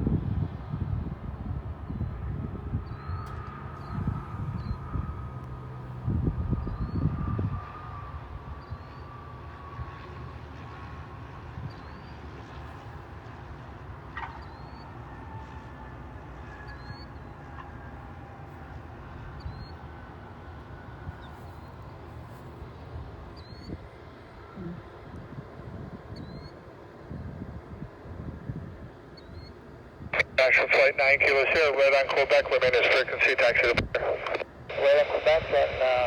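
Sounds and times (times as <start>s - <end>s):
distant jet engines rumbling: 28.4s - 36.0s.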